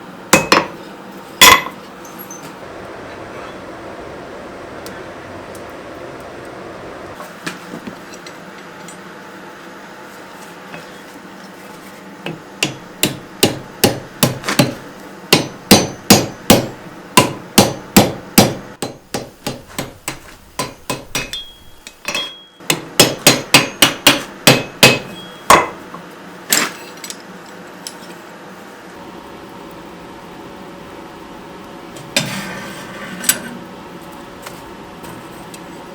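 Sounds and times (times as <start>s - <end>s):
hammer striking steel on anvil: 0.4s - 0.8s, 1.4s - 1.8s, 12.6s - 25.8s.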